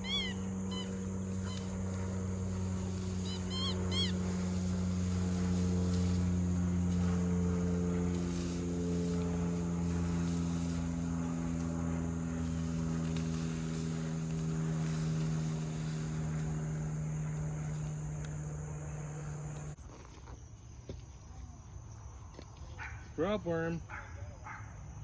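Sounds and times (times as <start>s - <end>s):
honking bird calls: 0.0s - 4.7s
low motor drone: 0.0s - 19.8s.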